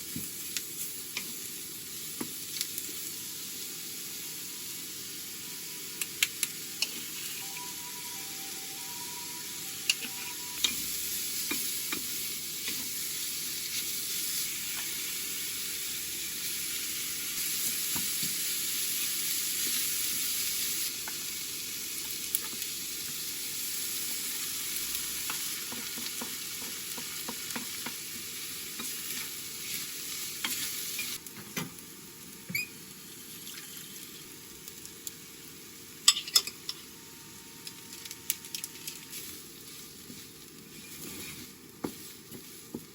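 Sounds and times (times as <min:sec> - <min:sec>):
food sizzling in a frying pan: 0:00.0 - 0:42.9.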